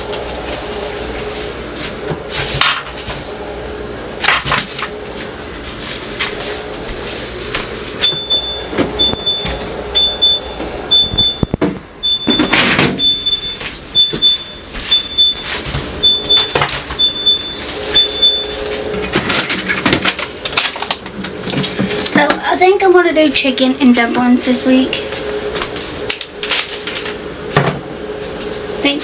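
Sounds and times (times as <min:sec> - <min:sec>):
refrigerator alarm beeping: 0:08.0 - 0:21.0, 0:21.9 - 0:26.6.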